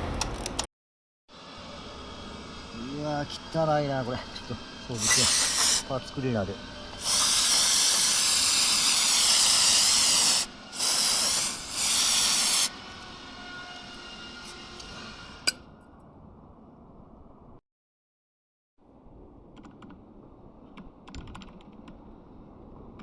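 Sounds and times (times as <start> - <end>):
aerosol spraying: 5.0 - 5.9, 7.0 - 12.7.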